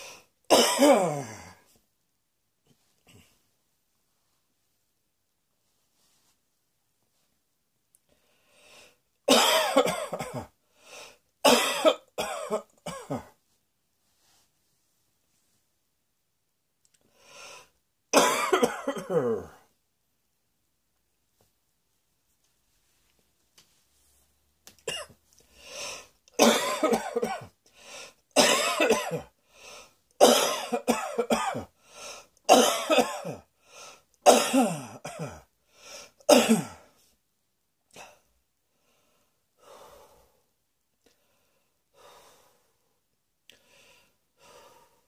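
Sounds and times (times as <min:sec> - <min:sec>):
person coughing: 0:00.5 - 0:01.6, 0:09.3 - 0:10.6, 0:11.4 - 0:13.4, 0:18.1 - 0:19.7, 0:24.8 - 0:25.2, 0:26.4 - 0:27.6, 0:28.4 - 0:29.3, 0:30.2 - 0:31.7, 0:32.5 - 0:33.5, 0:34.2 - 0:35.5, 0:36.2 - 0:36.9.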